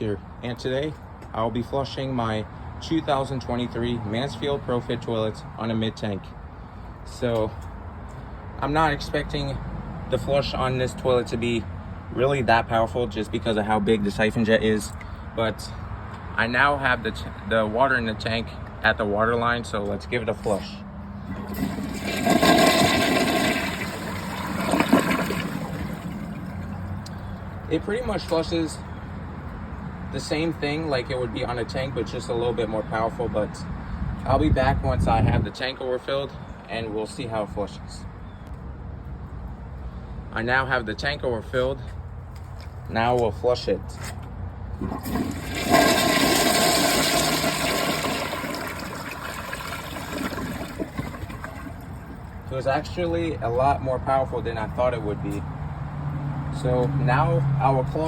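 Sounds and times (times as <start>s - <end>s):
toilet flushing: 21.3s - 26.9s, 44.8s - 52.2s.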